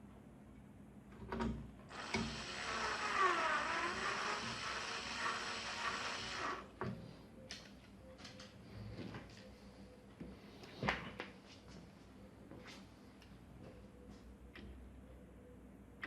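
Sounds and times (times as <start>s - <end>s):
electric screwdriver motor: 1.9s - 6.7s.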